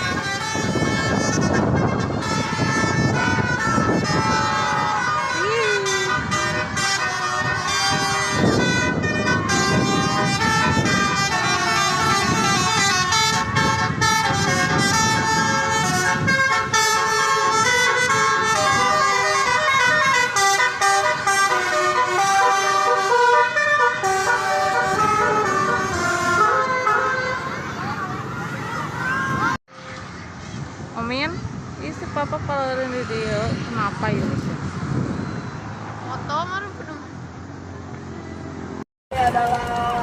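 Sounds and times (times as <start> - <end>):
bus melody horn: 0.0 - 30.1.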